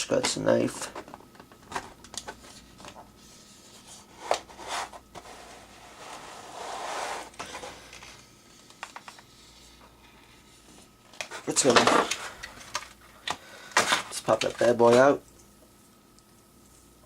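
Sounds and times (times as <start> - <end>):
plastic packaging clicks and crinkles: 0.2 - 3.0.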